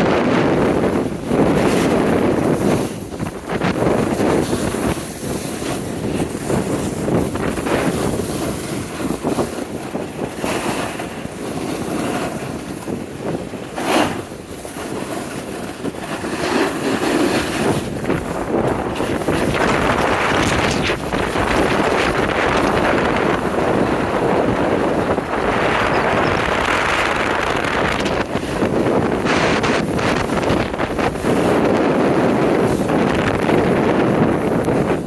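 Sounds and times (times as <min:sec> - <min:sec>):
wind buffeting microphone: 0:00.0 - 0:35.0.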